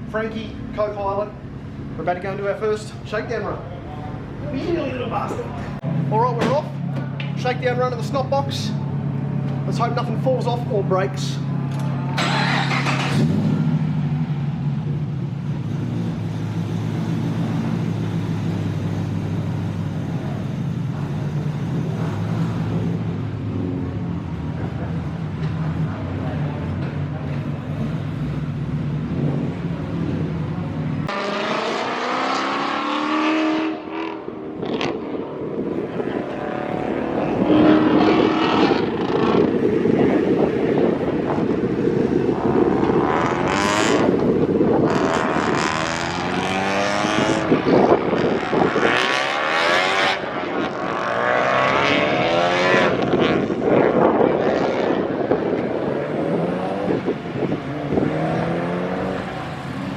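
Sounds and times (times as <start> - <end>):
car engine revving: 11.6 - 59.9.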